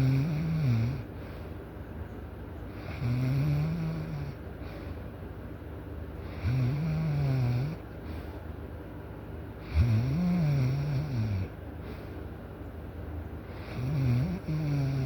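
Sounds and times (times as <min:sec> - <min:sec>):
person snoring loudly: 0:00.0 - 0:01.1, 0:02.8 - 0:04.4, 0:06.3 - 0:07.8, 0:09.6 - 0:11.5, 0:13.6 - 0:15.0
quiet breathing: 0:00.0 - 0:01.8, 0:04.0 - 0:05.2, 0:07.7 - 0:08.6, 0:11.0 - 0:12.5.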